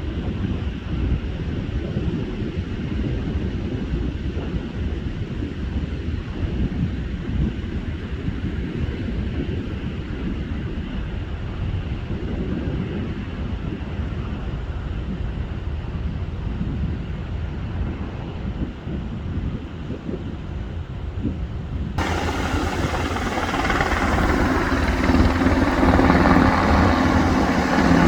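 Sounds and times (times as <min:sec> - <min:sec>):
wind buffeting microphone: 0:22.0 - 0:28.0.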